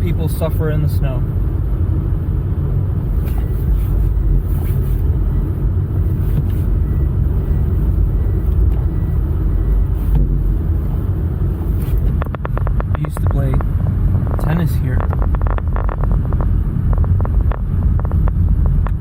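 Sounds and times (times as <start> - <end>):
car engine rumble: 0.0 - 19.0
road noise: 0.0 - 19.0.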